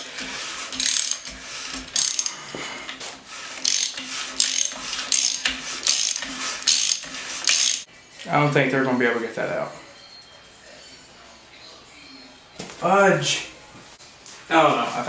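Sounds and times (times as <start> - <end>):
ratchet wrench clicking: 0.8 - 2.3, 3.6 - 7.9.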